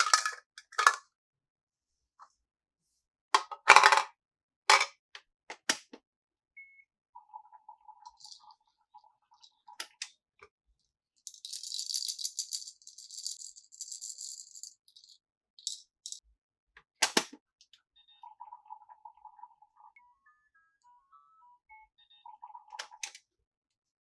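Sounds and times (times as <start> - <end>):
small hard objects rattling: 8.1 - 8.5, 11.2 - 16.2.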